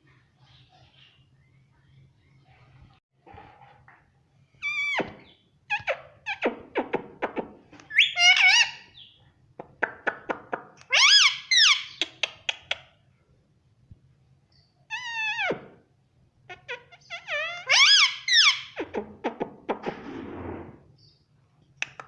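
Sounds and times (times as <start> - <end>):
parakeet shrill squawks: 7.9 - 9.1, 10.9 - 12.0, 16.5 - 18.8
parakeet clicks and chatter: 9.7 - 12.9.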